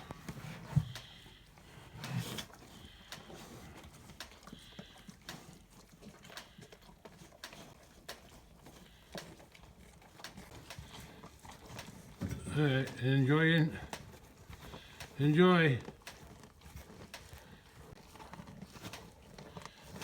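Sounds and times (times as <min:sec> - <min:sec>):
calves crunching and chewing: 0:00.0 - 0:20.0.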